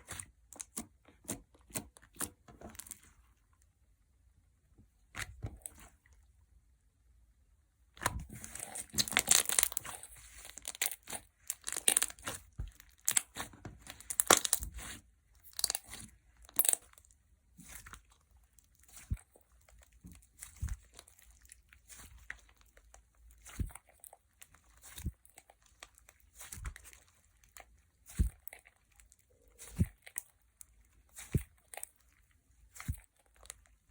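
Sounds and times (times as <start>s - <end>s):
slime squishing and popping: 7.9s - 33.9s.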